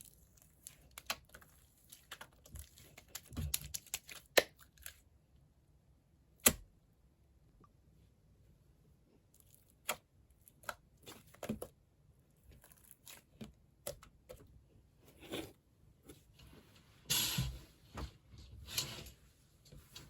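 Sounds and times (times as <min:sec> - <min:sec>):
slime squishing and crackling: 0:00.0 - 0:05.1, 0:12.4 - 0:14.3.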